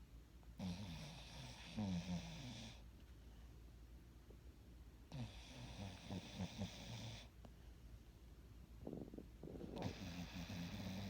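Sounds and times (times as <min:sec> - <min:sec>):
person snoring: 0:08.9 - 0:11.0.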